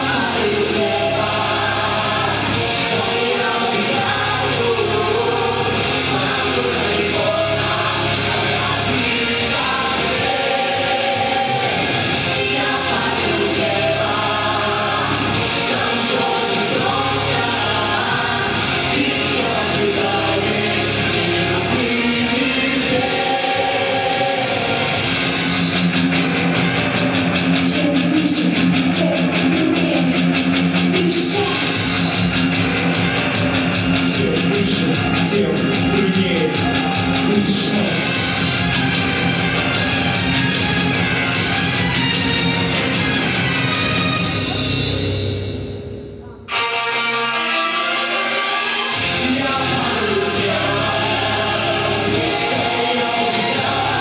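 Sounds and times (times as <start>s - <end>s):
instrumental accompaniment with beat: 0.0s - 28.0s, 31.5s - 54.0s
vocal ensemble singing pop song: 0.0s - 44.1s, 47.3s - 54.0s
pop-rock guitar over beat: 49.0s - 54.0s.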